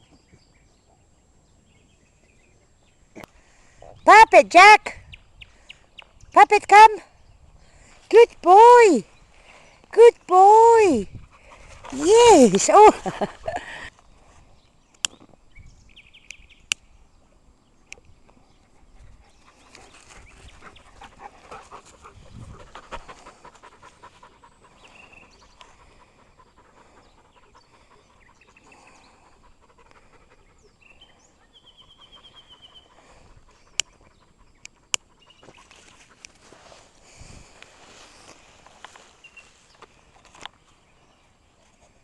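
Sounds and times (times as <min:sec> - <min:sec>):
dog panting: 0:11.2 - 0:13.9, 0:18.6 - 0:36.4.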